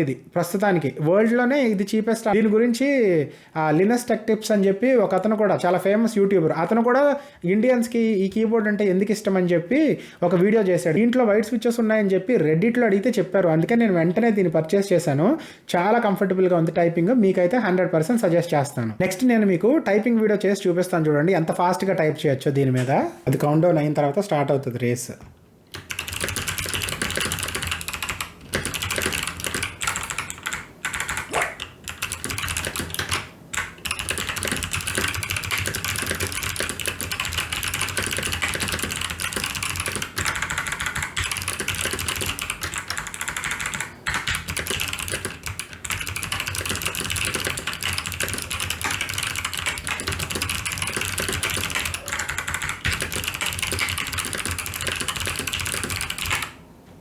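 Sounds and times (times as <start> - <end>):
clicky keyboard typing: 25.7 - 56.6.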